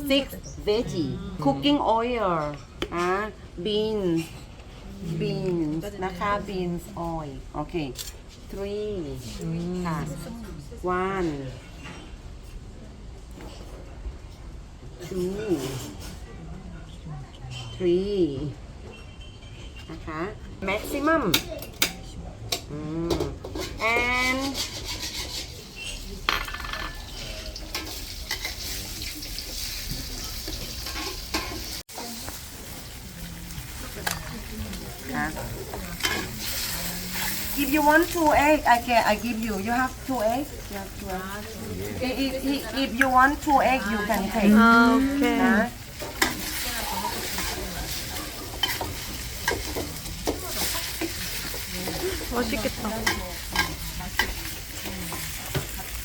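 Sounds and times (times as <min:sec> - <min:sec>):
food sizzling in hot oil: 0:27.0 - 0:44.2, 0:45.6 - 0:56.0.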